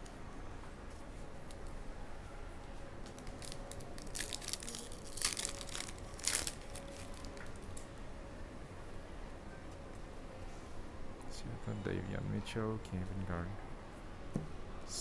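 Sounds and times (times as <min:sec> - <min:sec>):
foil wrapper crinkling: 0:03.2 - 0:07.7.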